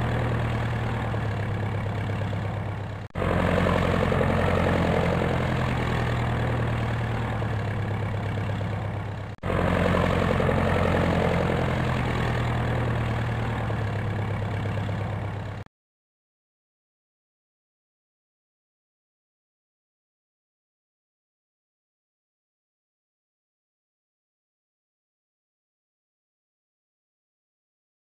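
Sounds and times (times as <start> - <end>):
helicopter rotor and engine drone: 0.0 - 15.7.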